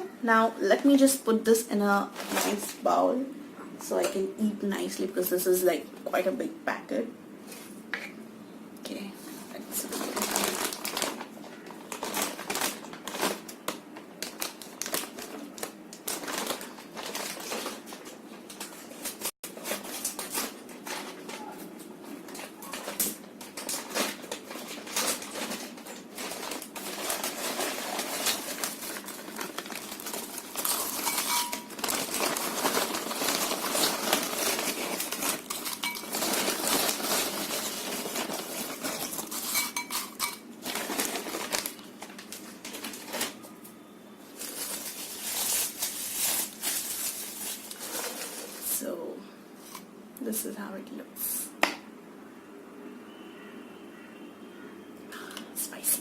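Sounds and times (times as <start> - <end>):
potato chips poured into a bowl: 23.8 - 41.8, 44.4 - 48.7.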